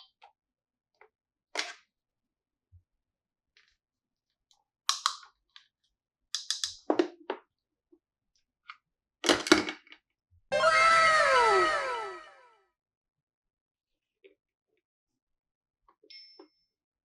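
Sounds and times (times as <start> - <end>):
plastic toy pieces clicking: 6.4 - 6.9.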